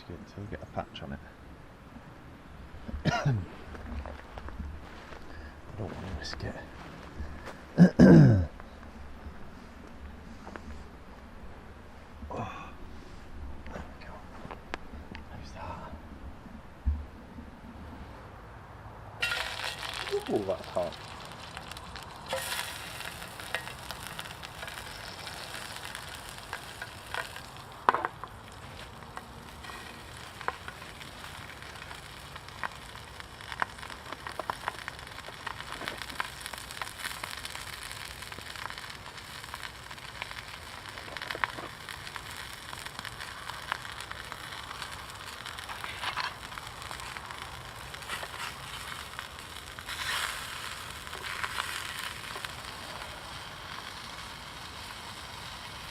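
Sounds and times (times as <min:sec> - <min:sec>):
pops and crackles: 0:02.8 - 0:08.9, 0:19.2 - 0:55.9
egg sizzling in oil: 0:19.2 - 0:55.9.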